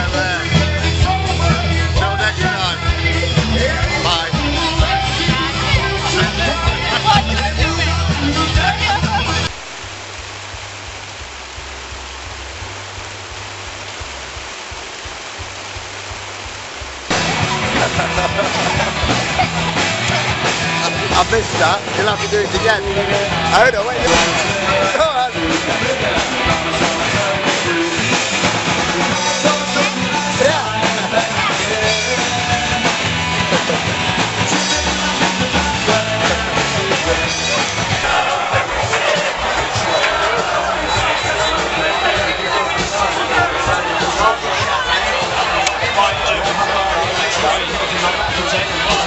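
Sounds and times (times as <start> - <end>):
person singing: 0.0 - 9.5, 17.2 - 41.6
live rock band playing: 0.0 - 9.6, 17.1 - 49.0
drum kit: 0.0 - 49.0
loud music: 0.0 - 49.0
rain hissing: 0.0 - 49.0
low uneven rumble: 4.8 - 27.9.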